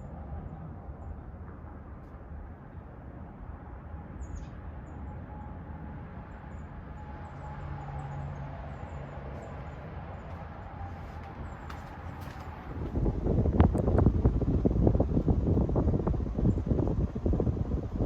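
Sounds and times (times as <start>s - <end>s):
ceiling fan whirring: 10.0s - 18.0s.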